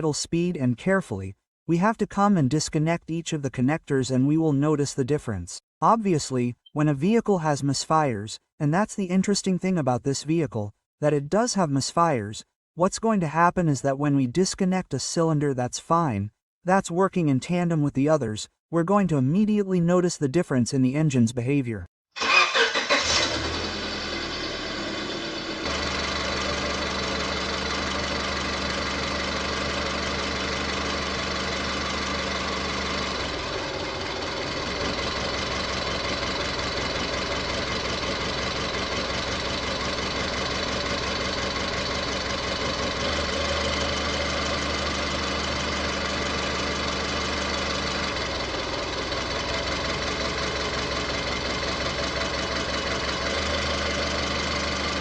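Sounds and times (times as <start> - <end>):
car engine idling unevenly: 23.0 - 55.0.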